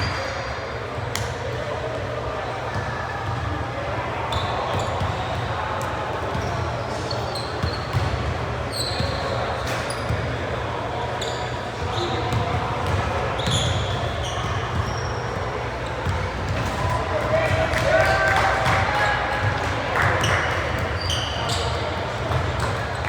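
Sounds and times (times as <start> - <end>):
sneakers squeaking: 0.0 - 2.0, 2.7 - 23.0
murmur of voices: 0.0 - 23.0
basketball bouncing: 16.0 - 16.6.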